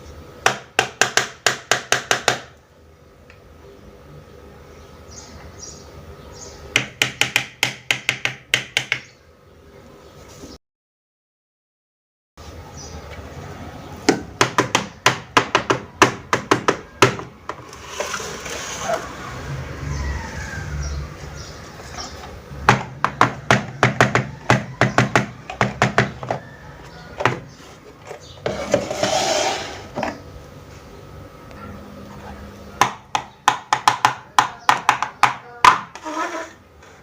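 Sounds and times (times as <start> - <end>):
rustling and scraping: 17.5 - 19.2, 26.2 - 30.9, 35.9 - 37.0.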